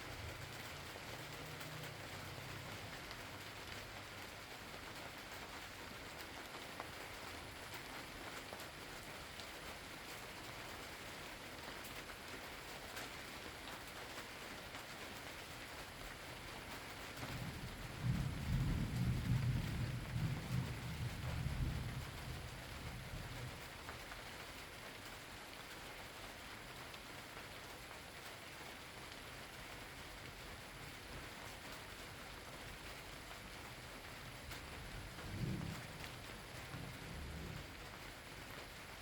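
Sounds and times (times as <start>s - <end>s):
steady rain falling: 0.0s - 39.0s
thunder rumbling: 17.5s - 23.6s, 34.6s - 38.0s.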